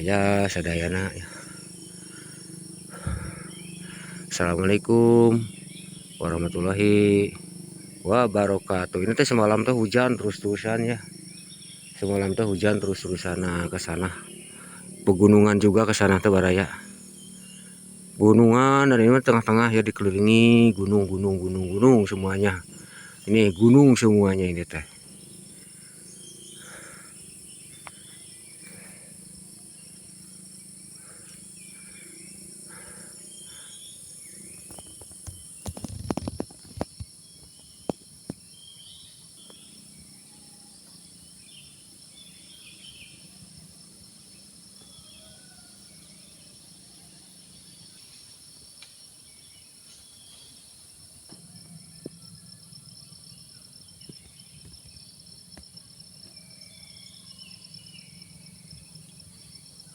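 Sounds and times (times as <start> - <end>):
short bird calls: 0.0 - 15.1, 20.2 - 40.9
insect drone: 0.0 - 59.9
sharp knocks and handling thumps: 34.6 - 38.4.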